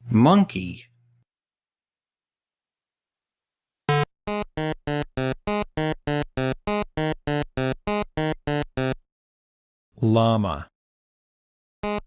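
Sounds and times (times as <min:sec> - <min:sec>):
buzzy electronic pulsing tone: 0:03.9 - 0:09.0.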